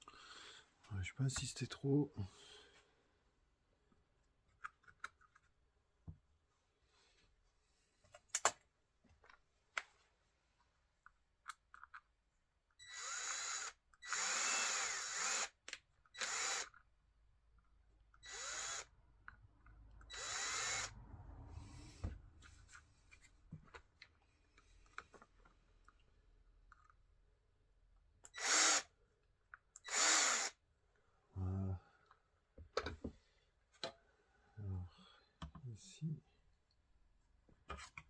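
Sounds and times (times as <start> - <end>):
power drill bursts: 12.8 - 15.6, 16.2 - 16.7, 18.2 - 18.9, 20.1 - 21.0, 28.3 - 28.9, 29.8 - 30.6.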